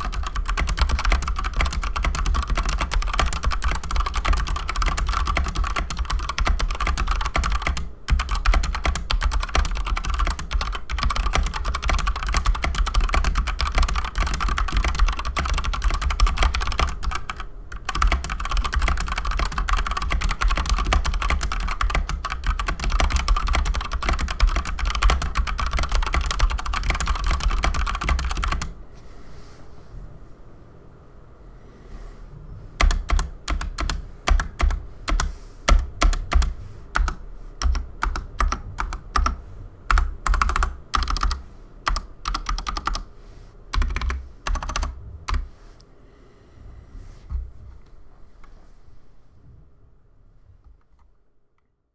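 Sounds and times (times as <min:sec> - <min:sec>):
fast typing on mechanical keyboard: 0:00.0 - 0:28.7, 0:32.8 - 0:43.1, 0:43.7 - 0:45.5.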